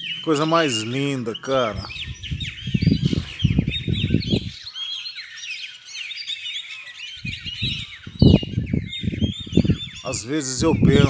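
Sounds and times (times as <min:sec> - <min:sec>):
low rumbling: 0:00.0 - 0:04.5
many birds chirping: 0:00.0 - 0:11.0.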